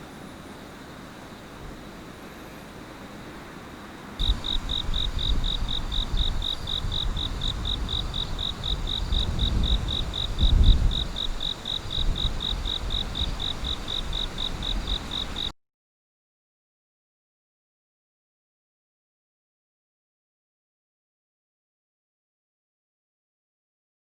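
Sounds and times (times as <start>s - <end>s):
insect chirping: 0.0s - 15.5s.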